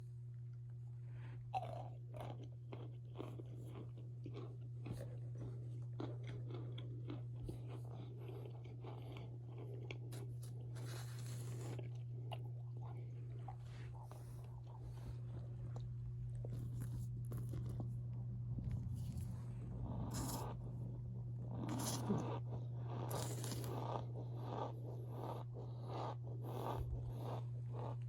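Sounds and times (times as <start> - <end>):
cornstarch crunching: 1.6 - 18.0, 18.6 - 20.7, 21.5 - 28.0.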